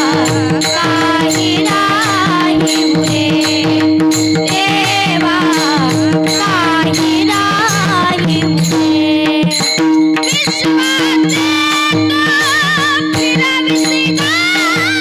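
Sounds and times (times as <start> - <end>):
hand drum: 0.0 - 15.0
woman singing devotional melody: 0.0 - 15.0
sustained drone: 5.3 - 9.8.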